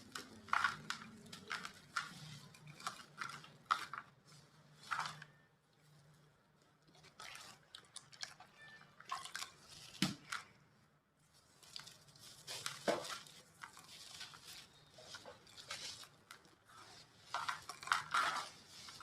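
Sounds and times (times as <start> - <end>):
cement chunks crunching: 0.0 - 5.4, 11.6 - 19.0.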